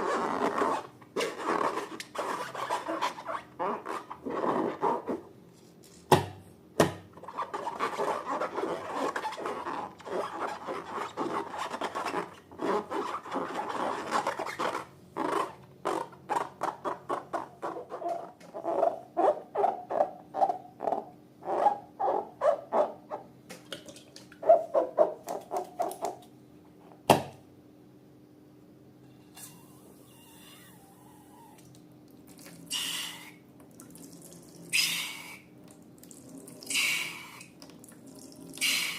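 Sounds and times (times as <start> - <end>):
slime rubbing and scraping: 0.0 - 5.2.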